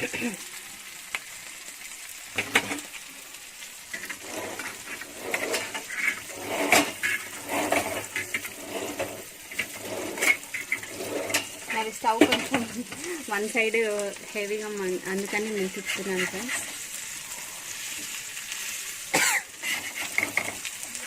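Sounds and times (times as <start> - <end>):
fish frying in a pan: 0.0 - 21.0
metal utensil scraping a pan: 2.4 - 2.9, 3.9 - 13.4, 14.1 - 18.8, 19.5 - 20.8.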